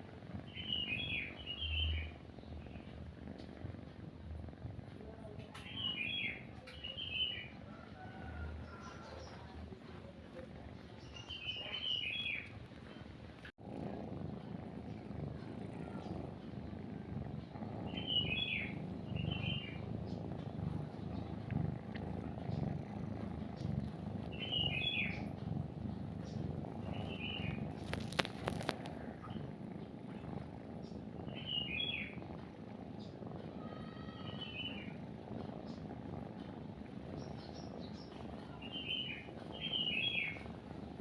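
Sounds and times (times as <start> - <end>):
cat purring: 0.0 - 41.0
bird chirps: 11.0 - 12.4, 18.0 - 19.8, 24.3 - 25.2, 31.3 - 32.2, 38.7 - 40.4.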